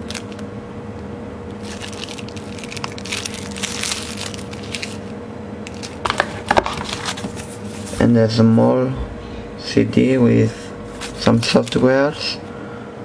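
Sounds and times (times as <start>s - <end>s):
packaging crinkling and rustling: 0.0s - 0.4s, 1.6s - 5.1s, 5.7s - 7.9s
faint steady hum: 0.0s - 13.0s.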